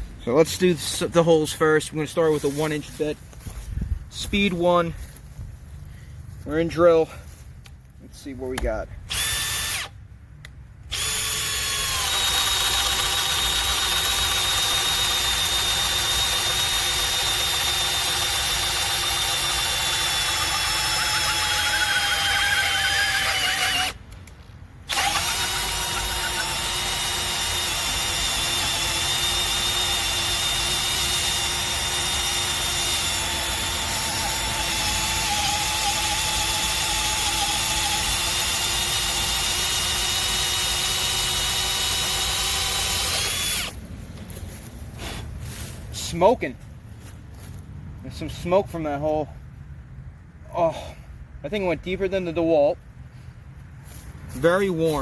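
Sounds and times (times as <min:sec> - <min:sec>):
hammer drill boring into wood: 0:09.1 - 0:09.9, 0:10.9 - 0:24.0, 0:24.8 - 0:43.8.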